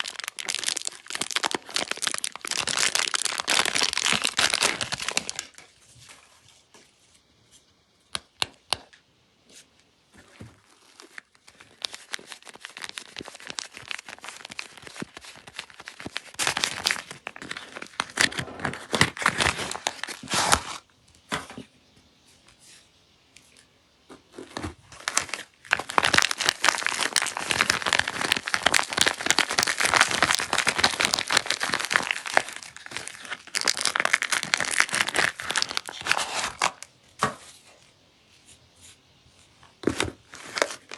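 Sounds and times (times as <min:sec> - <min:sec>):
wrappers crinkling and tearing: 0:00.0 - 0:06.2, 0:10.2 - 0:20.8, 0:24.3 - 0:37.4, 0:39.8 - 0:40.9.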